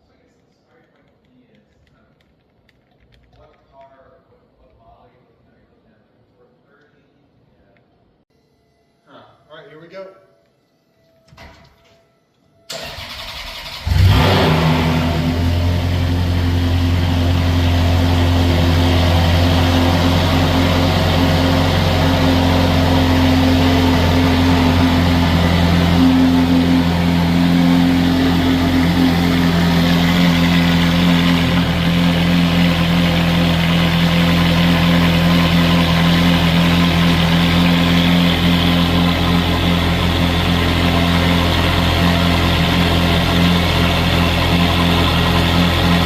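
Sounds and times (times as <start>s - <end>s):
car engine idling: 12.8s - 46.0s.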